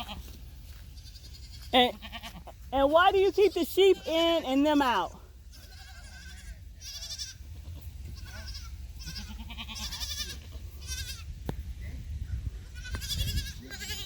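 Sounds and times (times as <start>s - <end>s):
livestock bleating: 0.0s - 2.7s, 3.3s - 11.3s, 12.6s - 14.0s
low wind rumble: 10.5s - 14.0s.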